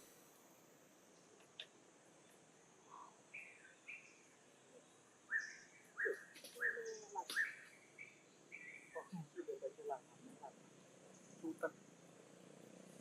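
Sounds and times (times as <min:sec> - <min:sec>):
short high chirping calls: 0:05.3 - 0:09.2.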